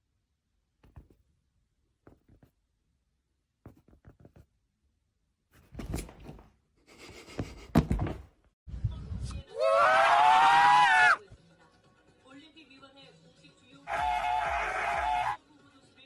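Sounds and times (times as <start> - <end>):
thuds and knocks: 5.6 - 6.6, 7.2 - 8.5.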